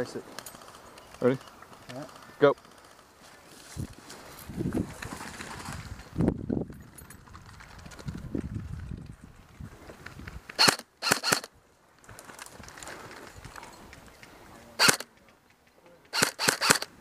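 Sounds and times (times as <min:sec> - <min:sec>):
rustling of movement: 0:00.0 - 0:16.9
airsoft gun shots: 0:10.6 - 0:11.5, 0:14.8 - 0:15.1, 0:16.1 - 0:16.9.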